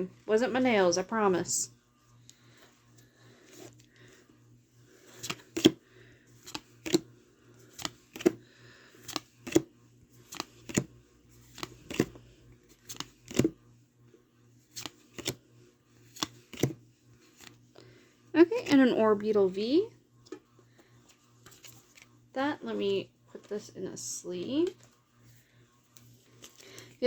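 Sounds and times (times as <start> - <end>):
cards flicking: 6.4 - 7.0, 7.7 - 8.4, 9.0 - 10.9, 11.5 - 12.1, 14.7 - 15.4.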